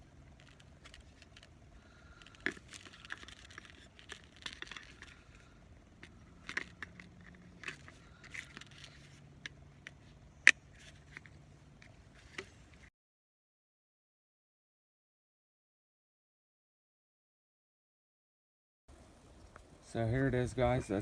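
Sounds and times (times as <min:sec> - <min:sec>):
gear rustling and scraping: 0:00.0 - 0:12.9.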